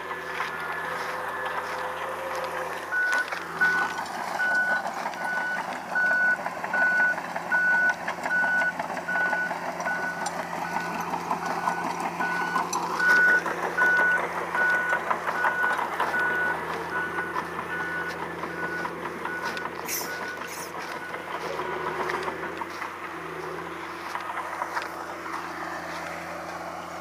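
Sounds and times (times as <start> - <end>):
diesel engine running: 0.0 - 27.0
backup alarm beeping: 2.3 - 22.6.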